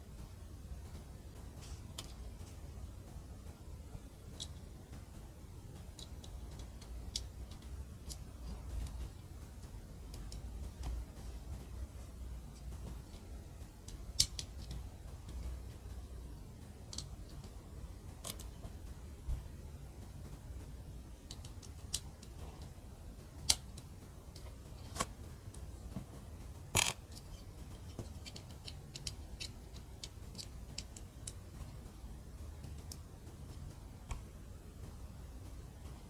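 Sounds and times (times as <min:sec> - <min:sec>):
plastic bricks clicking: 0:26.7 - 0:31.9.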